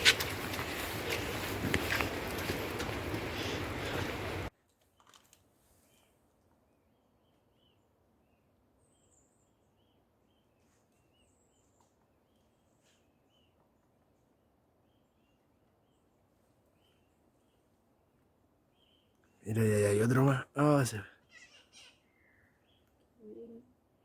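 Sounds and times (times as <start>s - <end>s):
birds chirping: 0.0s - 4.5s.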